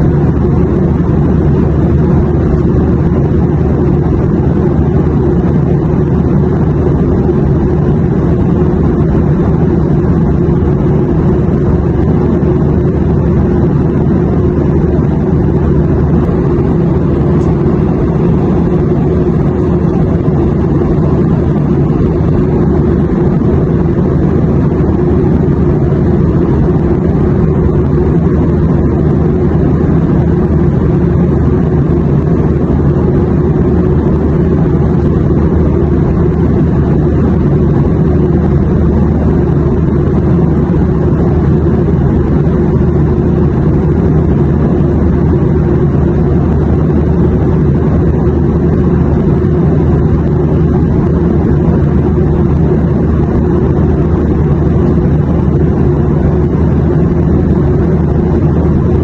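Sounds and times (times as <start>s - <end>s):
airplane engine drone: 0.0s - 59.0s
rushing air: 0.0s - 59.0s.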